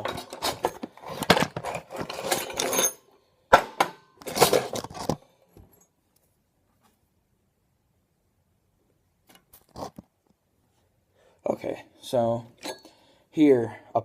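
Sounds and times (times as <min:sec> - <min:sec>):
metal pieces clinking and clattering: 0:00.0 - 0:03.0.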